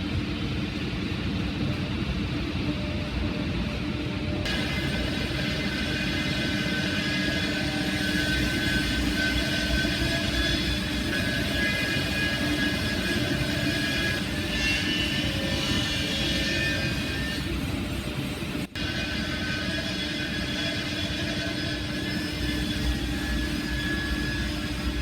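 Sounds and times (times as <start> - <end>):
high machine whine: 0.0 - 25.0
sawmill machinery drone: 0.0 - 25.0.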